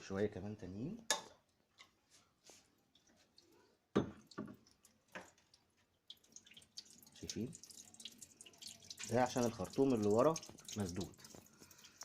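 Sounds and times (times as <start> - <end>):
water dripping and trickling: 2.4 - 12.0.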